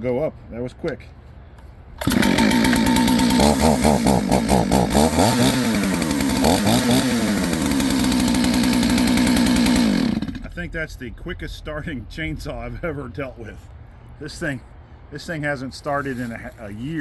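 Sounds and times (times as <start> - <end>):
chainsaw starting and revving: 2.0 - 10.6.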